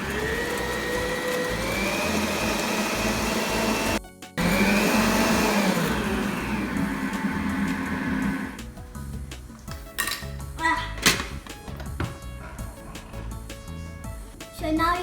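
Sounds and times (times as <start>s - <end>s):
electric mixer motor whine: 0.0s - 8.7s.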